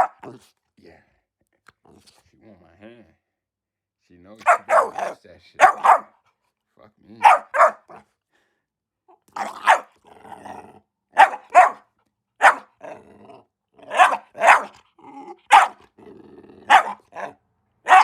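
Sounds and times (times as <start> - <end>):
dog barking: 0.0 - 0.4, 4.4 - 6.2, 7.2 - 8.0, 9.4 - 10.0, 11.1 - 13.0, 13.8 - 14.8, 15.4 - 15.9, 16.6 - 18.0
dog growling: 1.7 - 2.6, 4.4 - 6.1, 9.1 - 11.8, 12.4 - 18.0.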